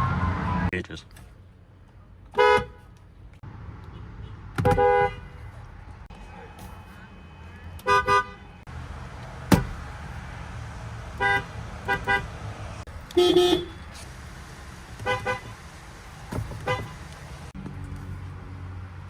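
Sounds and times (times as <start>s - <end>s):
low traffic rumble: 0.0s - 19.0s
car horn beeps: 2.3s - 2.8s, 3.8s - 5.5s, 6.6s - 8.6s, 11.2s - 12.3s, 13.1s - 13.9s, 15.0s - 15.6s, 16.6s - 17.0s.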